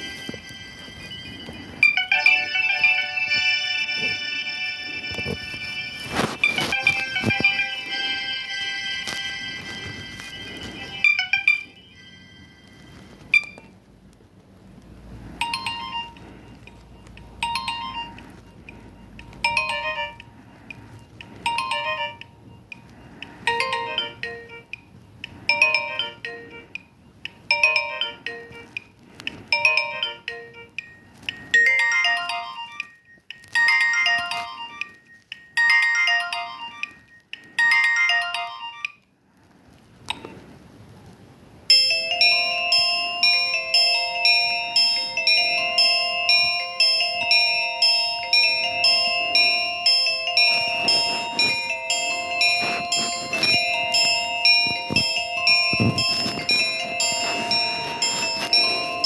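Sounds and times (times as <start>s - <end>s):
mobile phone ringtone melody: 0.0s - 13.9s, 15.2s - 39.2s, 41.7s - 59.0s.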